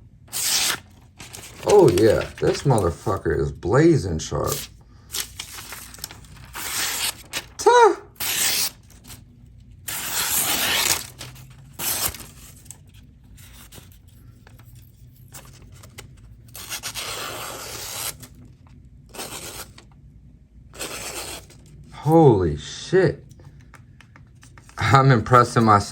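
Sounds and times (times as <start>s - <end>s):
knife slicing through paper: 0.3s - 2.9s, 4.4s - 7.6s, 8.2s - 8.9s, 9.9s - 12.7s, 16.5s - 18.3s, 19.1s - 19.8s, 20.8s - 21.6s.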